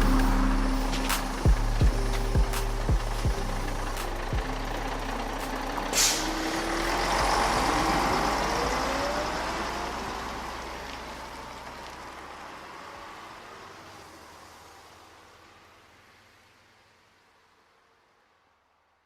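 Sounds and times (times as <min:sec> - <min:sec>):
heavy vehicle pulling away whine: 0:00.0 - 0:15.4
air brake hiss: 0:05.9 - 0:06.5.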